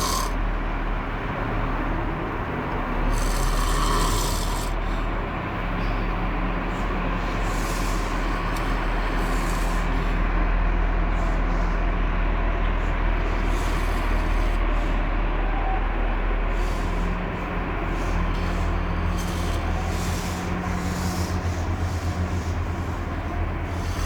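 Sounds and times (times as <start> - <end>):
man snoring loudly: 0.0 - 0.4, 2.8 - 5.0.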